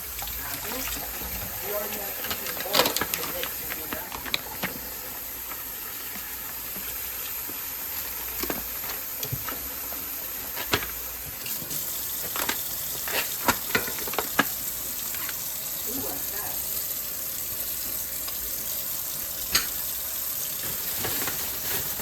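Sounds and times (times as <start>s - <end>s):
food sizzling in a pan: 0.0s - 22.0s
kitchen utensils clicking: 0.4s - 4.8s, 12.2s - 15.4s, 19.5s - 19.8s.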